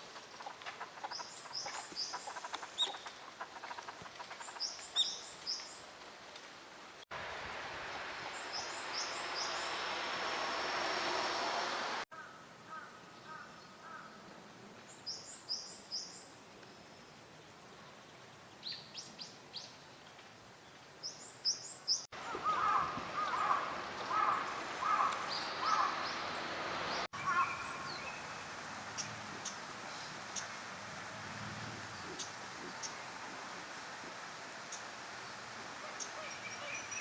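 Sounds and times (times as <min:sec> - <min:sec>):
quiet outdoor ambience: 0:00.0 - 0:37.0
short bird calls: 0:22.2 - 0:26.2.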